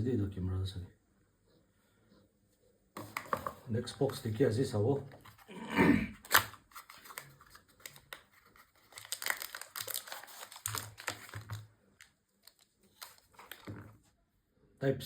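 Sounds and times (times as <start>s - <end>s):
packaging crinkling and rustling: 6.2s - 14.1s.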